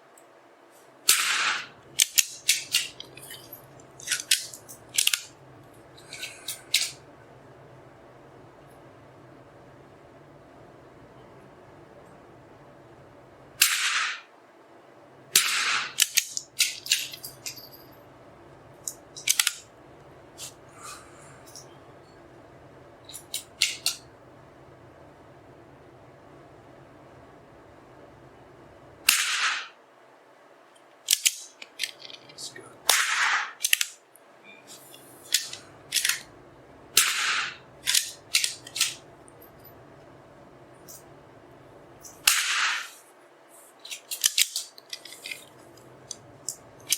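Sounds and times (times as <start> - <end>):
rifle shots cracking: 1.1 - 3.1, 13.6 - 14.3, 15.4 - 17.0, 29.1 - 29.8, 32.9 - 34.0, 37.0 - 39.1, 42.2 - 43.0
metallic clicks of rifle action: 1.4 - 5.3, 18.8 - 19.7, 30.9 - 32.3, 33.6 - 34.0, 35.3 - 36.3, 37.2 - 39.0, 43.9 - 46.9.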